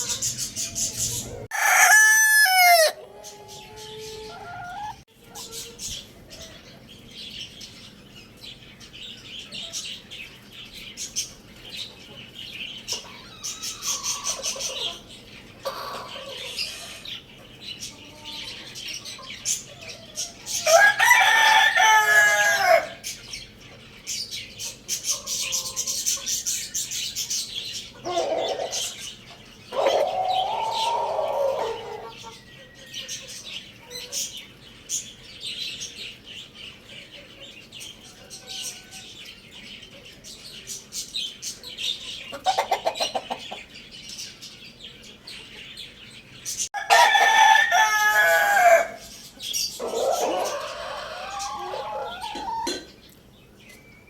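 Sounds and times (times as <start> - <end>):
rooster clucking: 0.0 - 5.8, 12.9 - 17.1, 28.0 - 29.0, 29.7 - 32.4, 42.3 - 43.7, 49.8 - 53.0
small birds chirping: 0.0 - 46.8, 47.4 - 54.0
rooster crowing: 1.4 - 4.6, 20.7 - 23.0, 46.8 - 49.1, 49.8 - 52.8.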